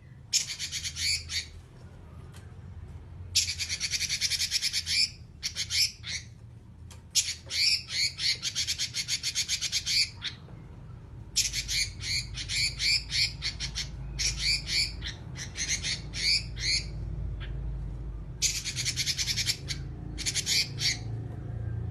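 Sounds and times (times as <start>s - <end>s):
bird harsh rattling chatters: 0.3s - 1.5s, 11.4s - 17.6s, 18.4s - 21.1s.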